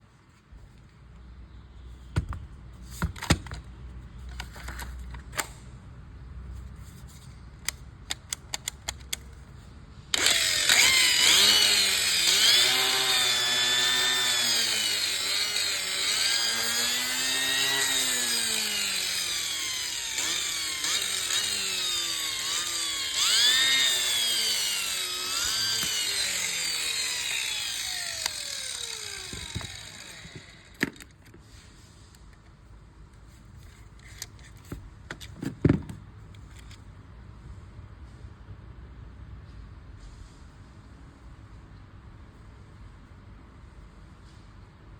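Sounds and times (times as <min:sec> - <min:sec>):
tool handling clicks and taps: 0:07.6 - 0:09.4
angle grinder motor running: 0:10.2 - 0:31.0.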